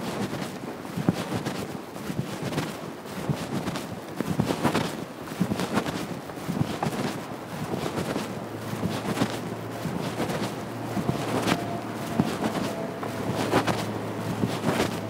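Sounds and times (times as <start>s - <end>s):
traffic hum: 6.2s - 15.0s.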